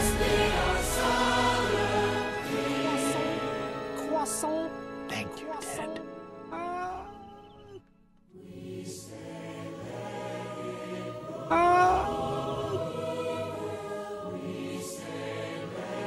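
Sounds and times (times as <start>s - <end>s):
backing music: 0.0s - 6.6s
choir singing sustained chords: 0.0s - 16.0s.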